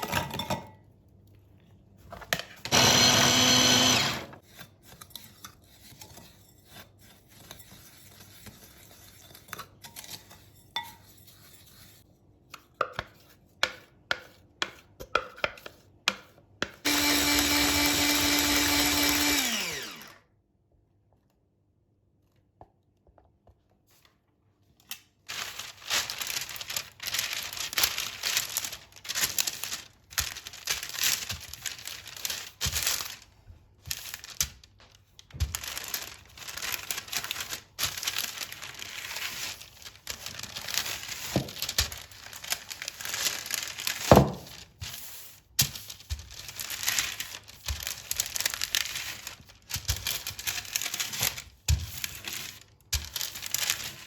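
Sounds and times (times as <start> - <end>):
crinkling and rustling: 23.3 - 54.0.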